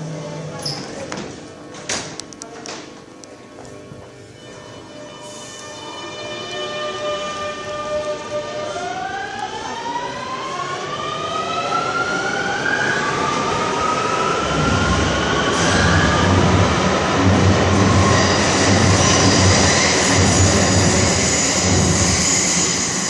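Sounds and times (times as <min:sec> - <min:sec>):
train traction motors whining: 0:13.2 - 0:23.0
train wheels rumbling on rails: 0:13.7 - 0:23.0.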